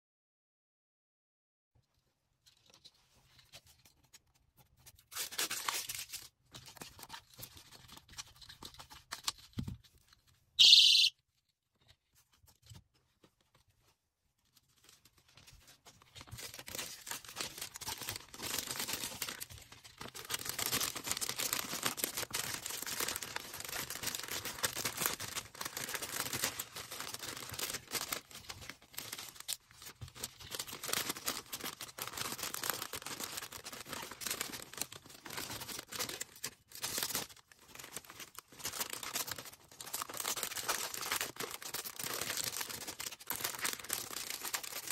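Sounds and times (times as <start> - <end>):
packaging tearing: 5.1 - 7.1, 16.4 - 44.9
personal alarm shriek: 10.6 - 11.1
plastic packaging crinkling: 14.6 - 44.9.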